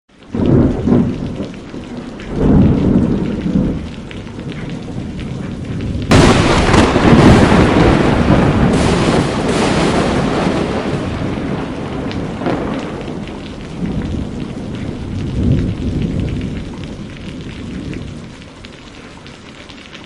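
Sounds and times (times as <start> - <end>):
steady rain: 0.1 - 20.0
rumbling thunder: 0.3 - 18.5.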